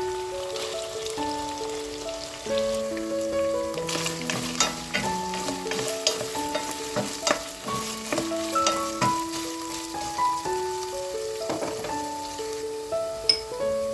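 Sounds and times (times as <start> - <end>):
food sizzling in a pan: 0.0 - 13.9
slow background music: 0.0 - 13.9
utensil clicking against pan: 3.9 - 9.3.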